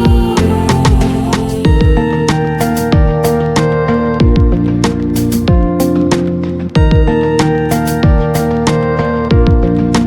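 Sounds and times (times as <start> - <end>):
deep kick drums: 0.0 - 2.2, 4.2 - 4.7, 6.8 - 7.2.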